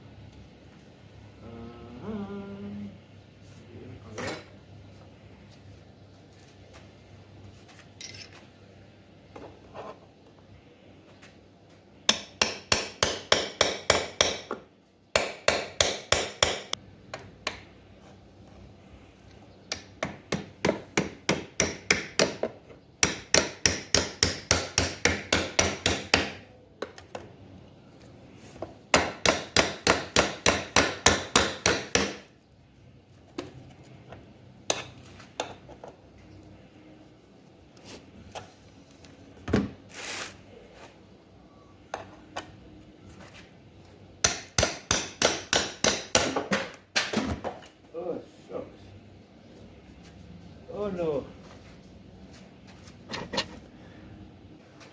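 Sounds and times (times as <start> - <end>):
hammer striking chisel on metal: 12.1 - 17.6, 19.7 - 26.4, 28.9 - 32.3, 34.7 - 35.6, 44.2 - 47.1.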